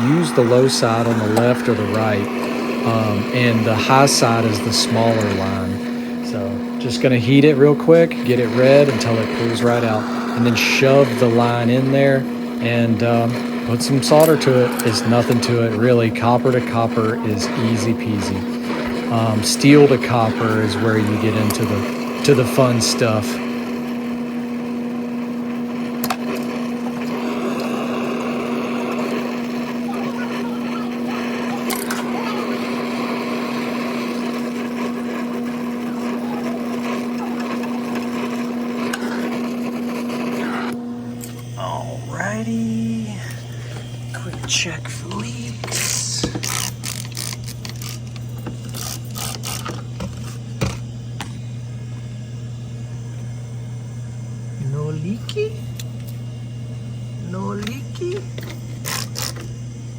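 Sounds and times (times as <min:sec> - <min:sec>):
low machine hum: 0:00.0 - 0:59.9
torch flame hissing: 0:00.0 - 0:59.9
low hum: 0:36.8 - 0:59.9.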